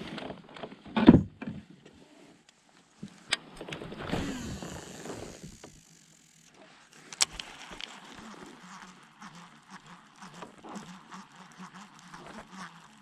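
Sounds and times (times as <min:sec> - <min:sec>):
fishing reel whirring: 0:04.1 - 0:13.0.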